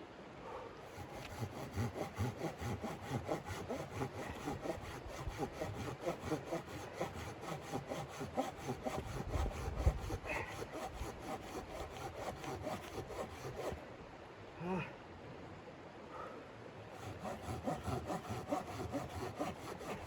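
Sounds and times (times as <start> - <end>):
saw cutting wood: 0.9 - 13.8, 16.9 - 20.0.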